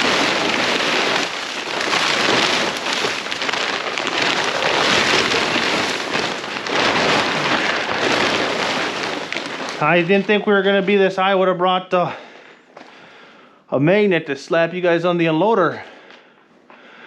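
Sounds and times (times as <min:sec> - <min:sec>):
plastic sheeting crinkling: 0:00.0 - 0:13.4.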